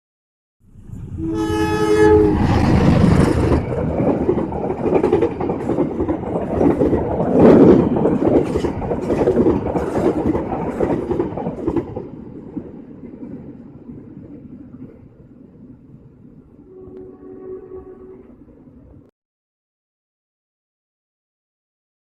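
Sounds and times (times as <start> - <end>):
two-note train horn: 1.1 - 2.8, 16.6 - 18.4
train wheels clattering over rail joints: 2.5 - 12.1.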